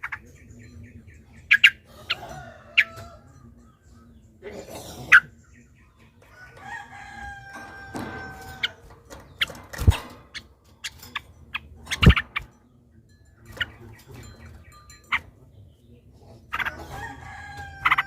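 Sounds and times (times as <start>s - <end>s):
bulbuls chattering: 0.0s - 18.0s
rooster crowing: 1.9s - 3.3s, 6.3s - 8.8s, 16.7s - 18.0s.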